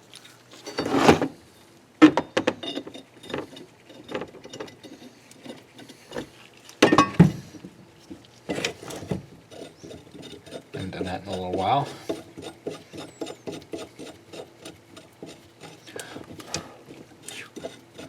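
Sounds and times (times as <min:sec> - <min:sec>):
metal parts clinking and scraping: 0:00.6 - 0:01.3.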